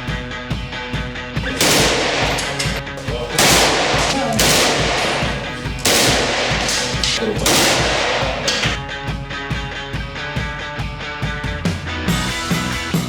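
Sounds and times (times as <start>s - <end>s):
rock music: 0.0s - 13.0s
automatic rifle fire: 1.4s - 8.8s.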